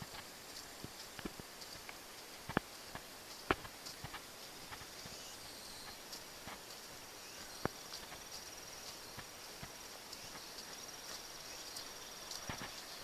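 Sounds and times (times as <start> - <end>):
faint clicks and taps: 0.0 - 5.2
insects trilling: 0.0 - 13.0.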